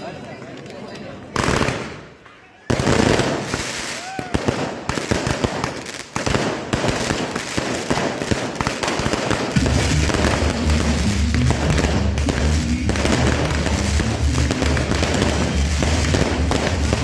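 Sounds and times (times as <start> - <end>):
fireworks crackling: 1.3 - 17.0
bass-heavy music: 9.6 - 17.0.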